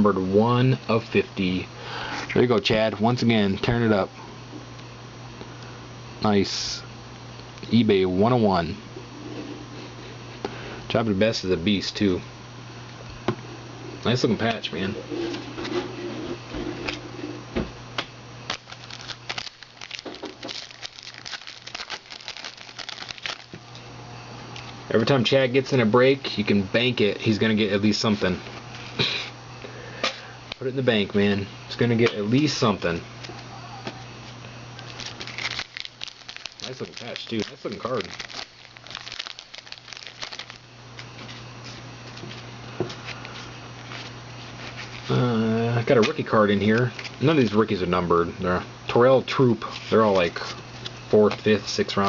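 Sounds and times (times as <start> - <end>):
card packs crinkling: 18.5 - 23.8, 34.8 - 41.4.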